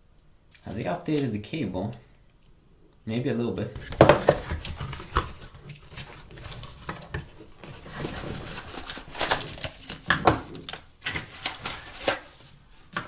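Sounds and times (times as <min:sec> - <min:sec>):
packaging rustling: 0:03.7 - 0:13.0.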